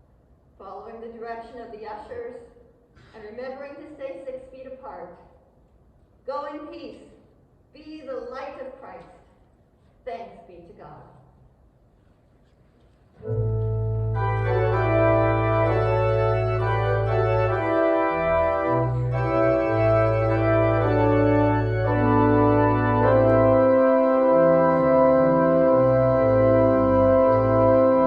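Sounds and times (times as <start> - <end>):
church organ chords: 13.2 - 28.0
low organ pedal notes: 13.2 - 28.0.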